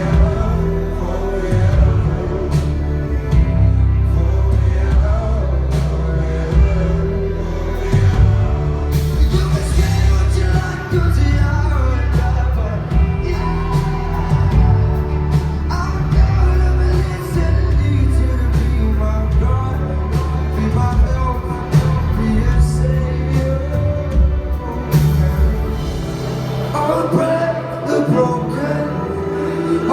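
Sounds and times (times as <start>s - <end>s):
live band playing loudly: 0.0s - 29.9s
person singing: 0.0s - 29.9s.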